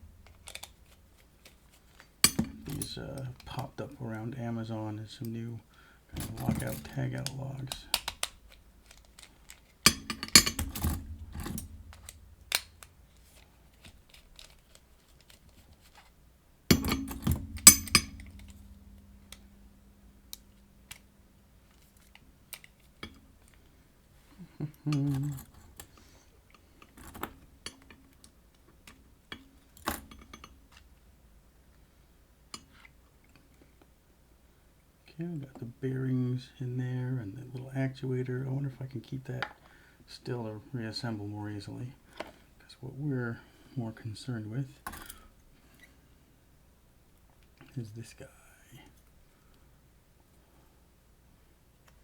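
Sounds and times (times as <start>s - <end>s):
padlock parts clicking and clinking: 6.2s - 15.4s, 16.7s - 21.1s.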